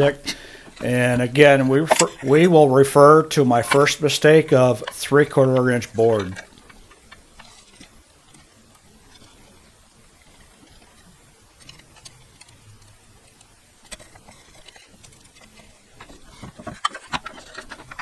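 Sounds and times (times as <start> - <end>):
sharp clicks: 0.0 - 6.8.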